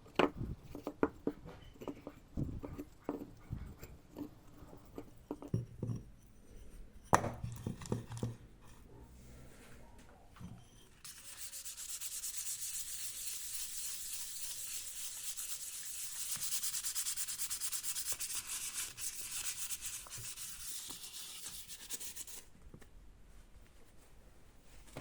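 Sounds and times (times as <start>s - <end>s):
sanding hiss: 11.1s - 22.4s.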